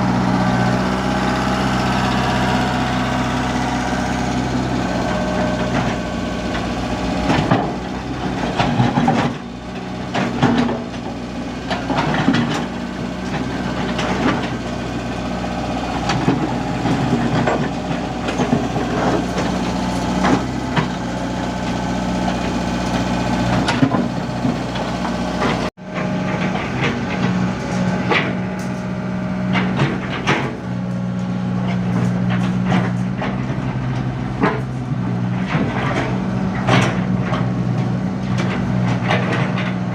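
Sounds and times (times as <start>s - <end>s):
excavator diesel engine running: 0.0s - 39.9s
knocks and clatter of debris: 5.6s - 14.8s, 16.0s - 21.0s, 31.6s - 39.9s.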